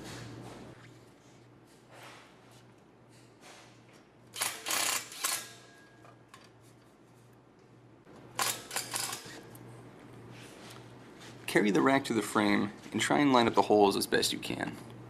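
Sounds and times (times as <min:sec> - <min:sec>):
screws clicking and rattling: 0:04.4 - 0:05.5, 0:08.4 - 0:09.4.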